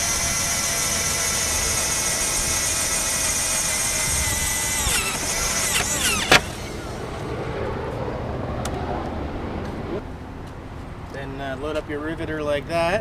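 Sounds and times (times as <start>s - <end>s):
power drill drilling: 0.0s - 7.3s.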